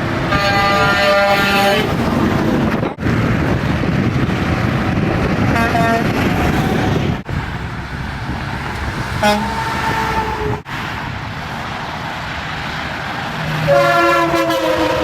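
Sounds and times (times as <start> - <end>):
highway traffic noise: 0.0 - 15.0
truck air horns: 0.3 - 2.0, 5.6 - 7.2, 9.2 - 10.7, 13.6 - 15.0.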